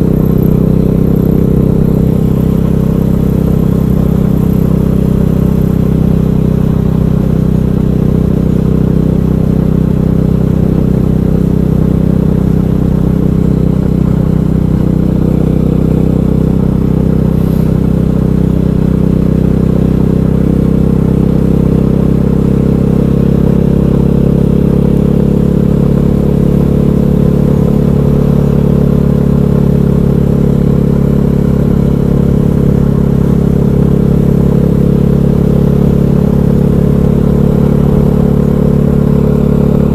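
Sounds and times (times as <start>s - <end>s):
motorcycle engine droning: 0.0s - 39.9s.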